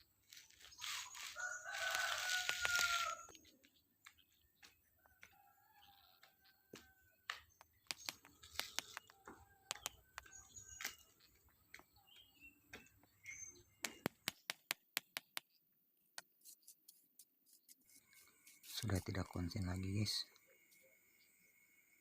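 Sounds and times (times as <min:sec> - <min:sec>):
paving blocks knocking together: 0:01.3 - 0:03.1, 0:06.2 - 0:10.0.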